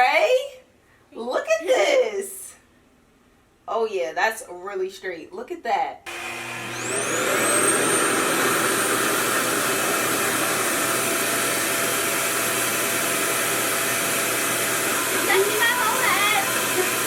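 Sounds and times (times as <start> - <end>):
hair dryer motor whine: 6.1 - 17.0.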